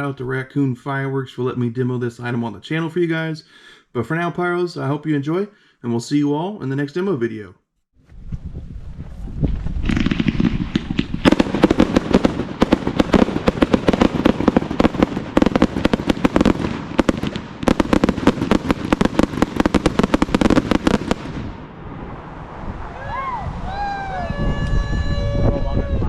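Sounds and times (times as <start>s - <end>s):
fireworks barrage: 9.4s - 23.0s.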